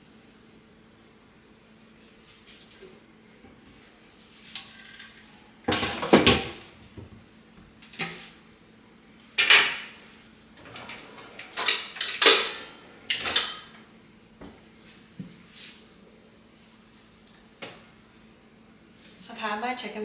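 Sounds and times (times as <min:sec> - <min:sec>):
pans and utensils clattering: 0:04.6 - 0:06.7, 0:10.6 - 0:13.8.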